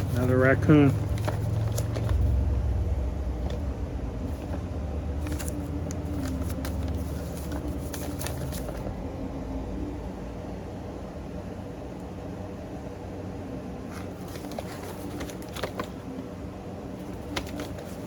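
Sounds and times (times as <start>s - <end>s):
low rumble: 0.0s - 11.6s.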